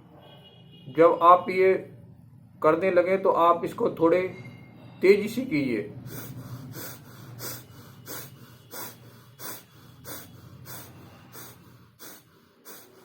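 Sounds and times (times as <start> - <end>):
forceful nasal breathing: 5.9 - 13.0.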